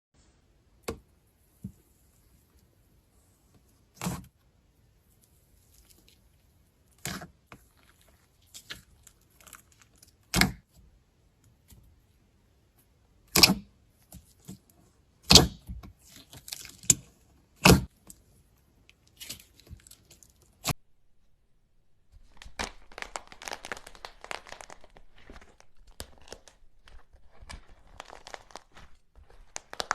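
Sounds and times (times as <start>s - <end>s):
faint crackles: 22.2s - 29.9s.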